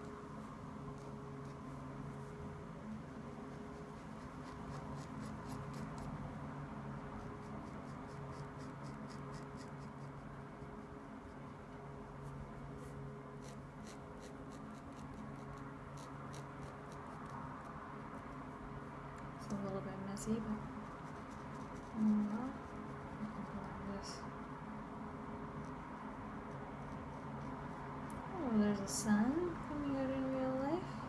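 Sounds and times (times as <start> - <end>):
steady low hum: 0.0 - 31.0
pencil scratching on paper: 3.5 - 6.1, 7.2 - 11.6, 12.2 - 17.4, 20.8 - 23.9.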